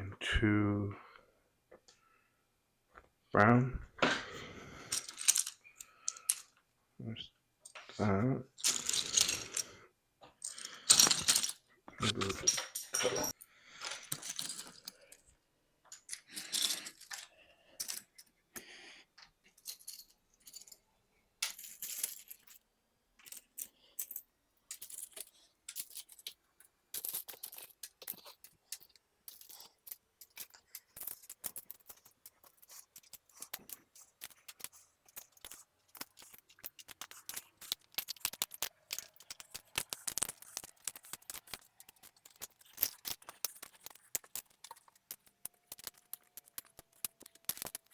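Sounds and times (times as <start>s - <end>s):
plastic bricks clicking and rattling: 4.9s - 6.5s, 8.6s - 9.7s, 10.4s - 15.2s, 23.2s - 47.9s.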